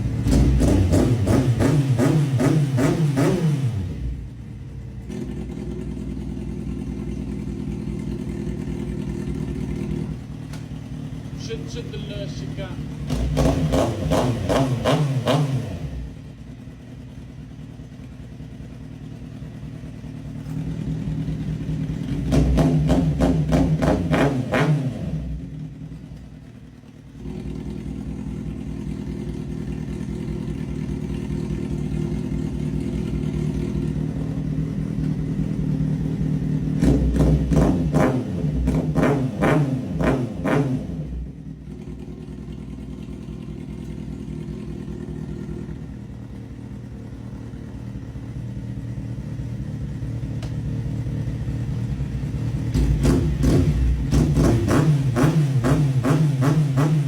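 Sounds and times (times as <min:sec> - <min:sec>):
vehicle engine running: 0:00.0 - 0:57.0
rapid sharp exhaust pops: 0:52.6 - 0:57.0.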